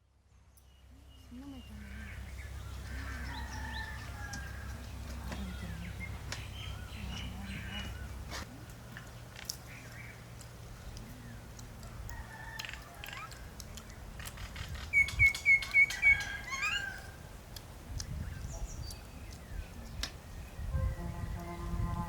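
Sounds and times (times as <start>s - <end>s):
bird chirping: 0.2s - 11.7s, 12.5s - 17.2s
faint clicks: 8.6s - 16.0s.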